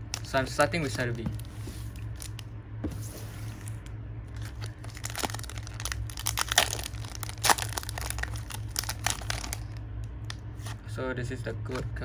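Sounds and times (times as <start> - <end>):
low steady hum: 0.0 - 12.0
foil wrapper tearing and crinkling: 4.4 - 9.8.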